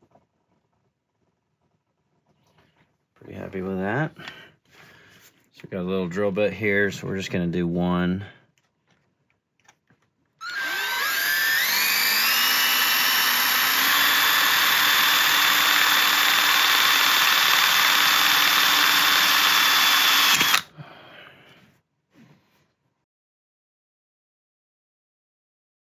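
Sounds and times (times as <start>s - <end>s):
power drill whine: 10.4s - 20.7s.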